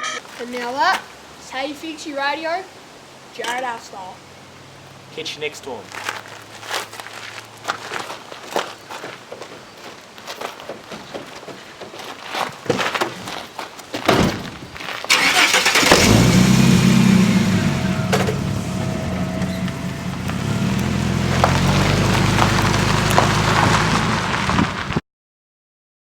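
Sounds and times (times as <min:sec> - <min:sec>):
car engine starting and running: 0:15.1 - 0:25.0.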